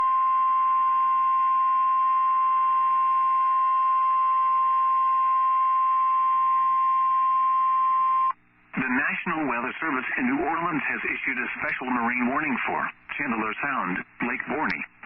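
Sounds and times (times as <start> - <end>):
faint radio hiss and hum: 7.0 - 15.0.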